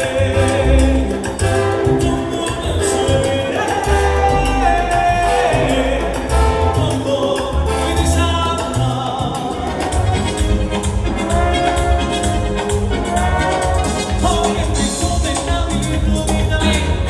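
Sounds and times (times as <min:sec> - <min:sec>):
salsa music with singing: 0:00.0 - 0:17.0.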